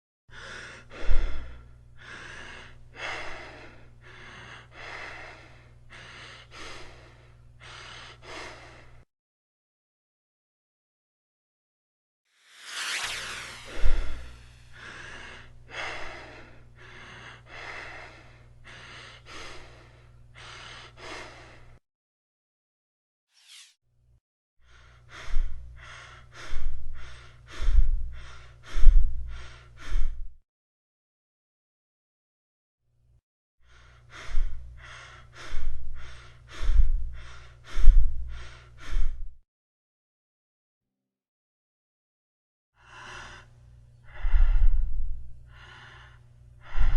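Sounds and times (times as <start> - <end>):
steady low hum: 0.4 - 9.0, 12.5 - 21.8, 24.8 - 30.4, 33.8 - 39.4, 42.9 - 46.9
breathing inhale and exhale: 12.5 - 21.8, 24.6 - 30.4, 33.7 - 39.4, 42.8 - 46.9.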